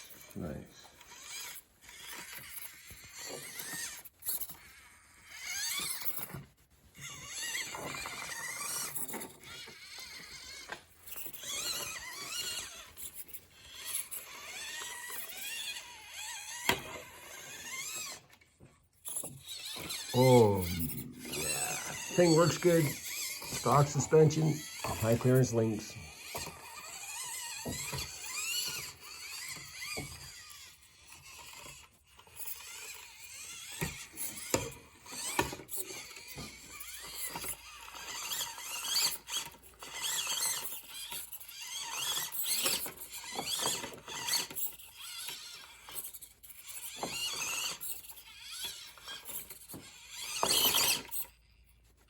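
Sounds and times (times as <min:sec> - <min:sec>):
electric motor and gears whining: 0:00.0 - 0:52.0
clicks and knocks from toy truck: 0:33.8 - 0:51.2.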